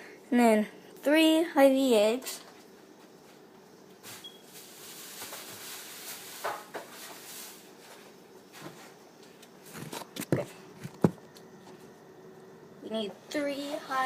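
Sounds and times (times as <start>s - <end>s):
kitchen items knocking and clattering: 5.1s - 7.2s.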